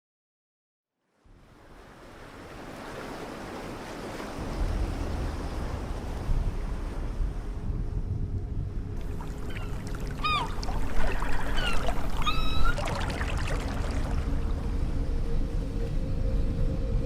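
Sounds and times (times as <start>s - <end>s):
wind rumble on microphone: 1.2s - 17.0s
sea surf rushing: 9.0s - 16.0s.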